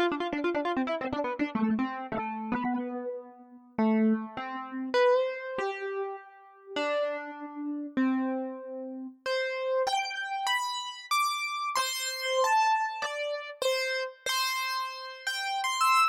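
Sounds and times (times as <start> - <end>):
electric piano melody: 0.0 - 6.2, 6.8 - 9.1.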